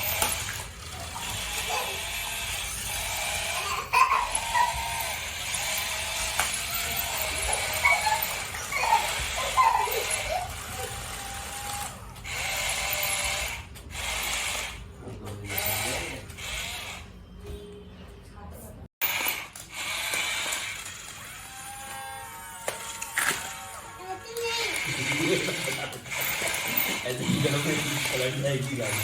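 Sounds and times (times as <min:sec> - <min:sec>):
toy car motors whirring: 0:00.0 - 0:17.2, 0:19.0 - 0:29.0.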